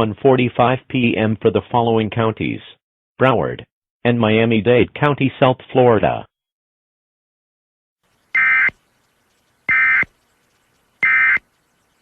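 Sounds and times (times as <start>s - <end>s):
raspy digital data tones: 8.3s - 12.0s.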